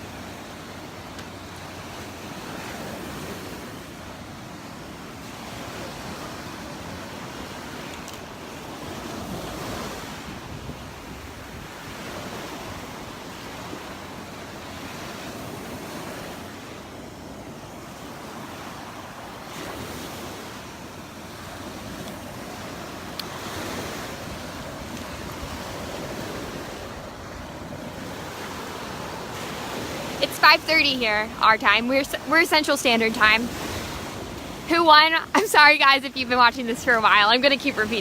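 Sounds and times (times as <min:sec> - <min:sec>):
surf breaking on beach: 0:00.0 - 0:38.0
wind on microphone: 0:05.5 - 0:13.9.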